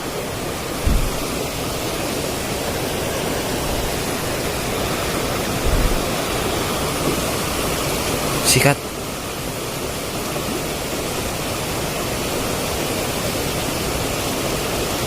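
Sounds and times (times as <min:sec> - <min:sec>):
water rushing: 0:00.0 - 0:15.0
low thump: 0:00.8 - 0:01.6, 0:05.6 - 0:07.2.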